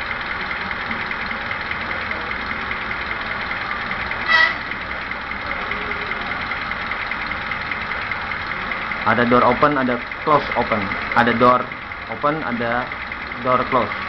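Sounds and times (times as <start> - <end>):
model locomotive diesel idle: 0.0 - 14.0
short horn toot: 4.2 - 4.7.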